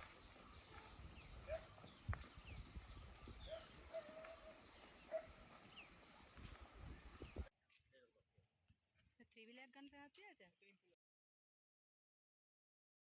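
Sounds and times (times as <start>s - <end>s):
insects chirring: 0.0s - 7.5s.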